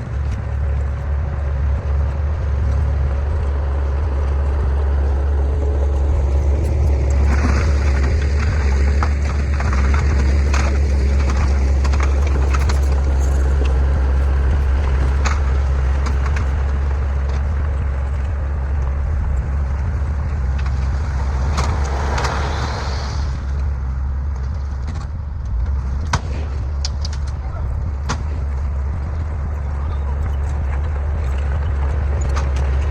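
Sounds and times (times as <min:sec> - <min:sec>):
diesel engine droning: 0:00.0 - 0:32.9
clicks and clanks: 0:24.4 - 0:32.9.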